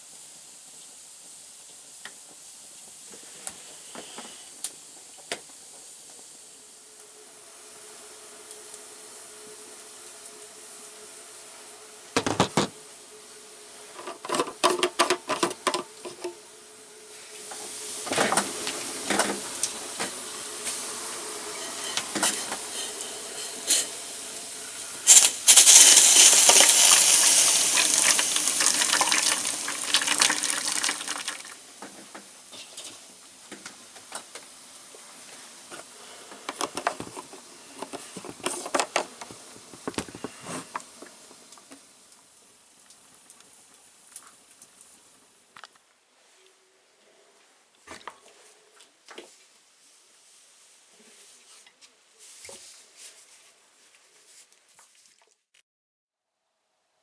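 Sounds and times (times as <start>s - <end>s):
hot water pouring into a bottle: 17.4s - 31.8s.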